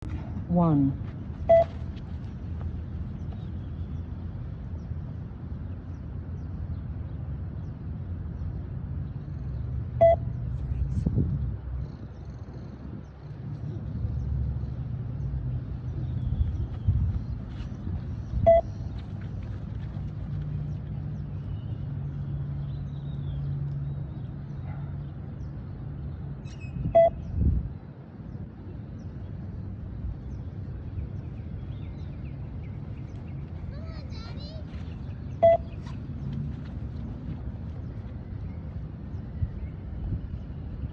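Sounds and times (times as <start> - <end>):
low outdoor rumble: 0.0 - 40.9
short beeps: 1.4 - 1.9, 10.0 - 10.3, 18.4 - 18.8, 26.9 - 27.2, 35.4 - 35.8.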